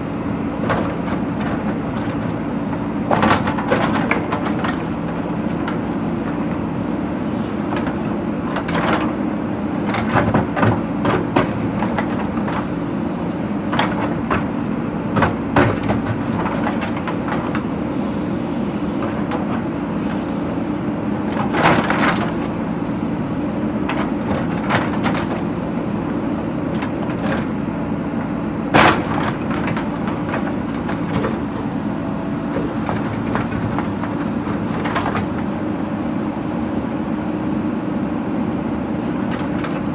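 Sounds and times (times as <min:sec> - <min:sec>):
diesel engine running: 0:00.0 - 0:39.9
bucket clanking on brick and stone: 0:07.6 - 0:35.5.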